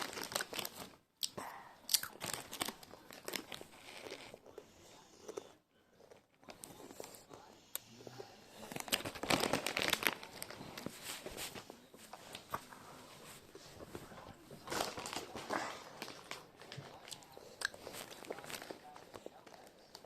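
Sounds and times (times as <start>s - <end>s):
crisp packet crinkling: 0.0s - 1.0s, 2.0s - 4.4s, 8.6s - 11.4s, 14.6s - 20.0s.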